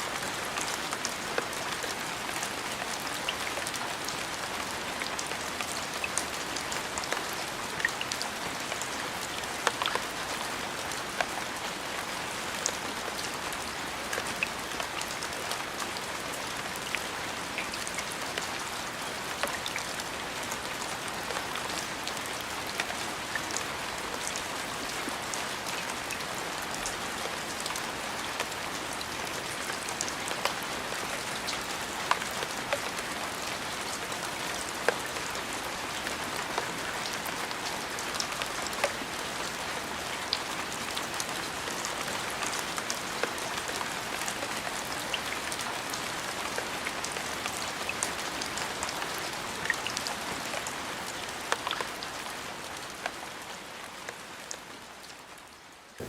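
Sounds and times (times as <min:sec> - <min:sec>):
raindrops ticking on a surface: 0:00.0 - 0:56.0
steady rain hiss: 0:00.0 - 0:56.0.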